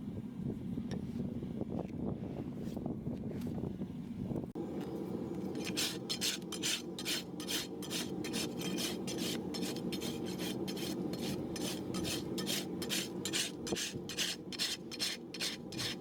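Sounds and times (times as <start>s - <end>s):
rasp filing a hoof: 5.6s - 16.0s.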